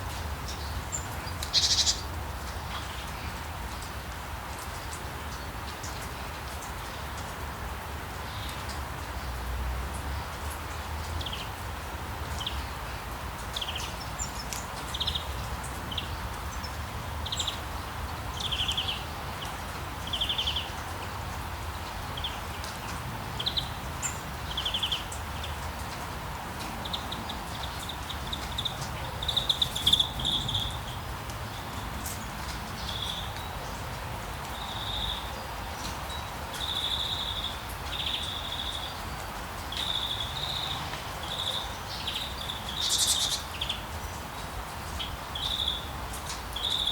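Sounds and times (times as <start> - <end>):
small birds chirping: 0.4 - 3.8, 26.6 - 33.8, 34.4 - 44.2, 44.9 - 46.9
low wind hum: 21.4 - 34.4.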